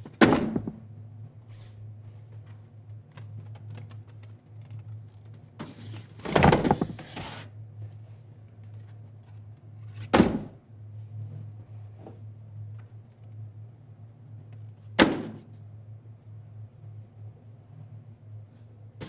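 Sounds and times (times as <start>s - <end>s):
low hum: 7.5s - 19.0s.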